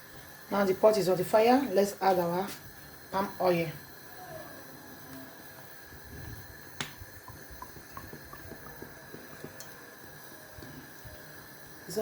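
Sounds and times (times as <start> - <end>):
sharp knock on pot: 6.8 - 9.6.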